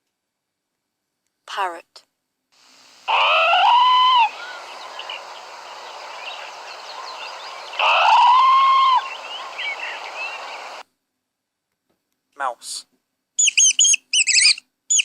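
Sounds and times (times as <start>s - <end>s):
steady background hiss: 0.1s - 11.1s
parrot calling: 3.1s - 10.8s, 13.4s - 15.0s.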